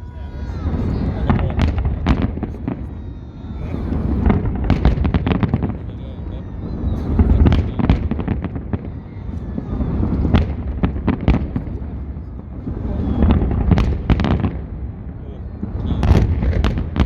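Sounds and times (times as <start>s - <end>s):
fireworks cracks and bangs: 0.1s - 17.0s
low rumble of booming shells: 9.8s - 17.0s.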